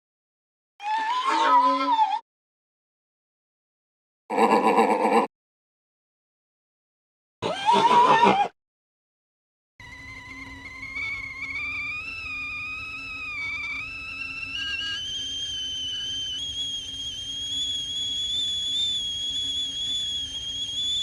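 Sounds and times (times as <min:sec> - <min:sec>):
wavering cartoon whistle rising: 0:09.8 - 0:21.0.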